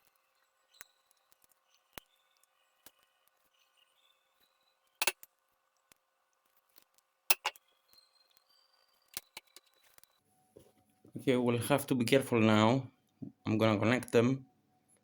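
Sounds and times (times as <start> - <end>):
clicks of small wires handled: 9.1 - 10.1.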